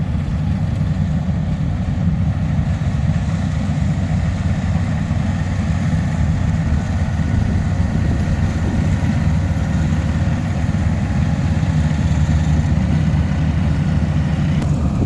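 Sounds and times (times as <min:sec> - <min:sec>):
diesel engine rumbling: 0:00.0 - 0:15.0.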